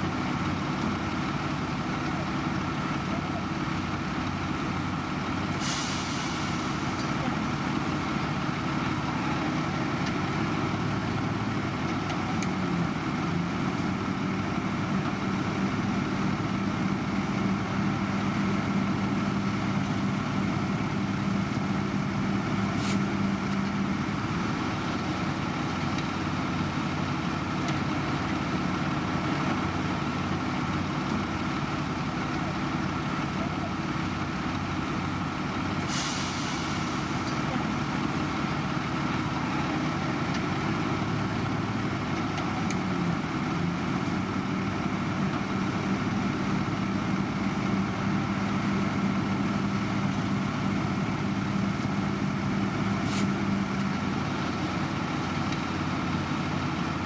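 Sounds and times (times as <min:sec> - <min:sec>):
diesel construction machinery running: 0:00.0 - 0:57.0
short hiss: 0:35.9 - 0:37.2.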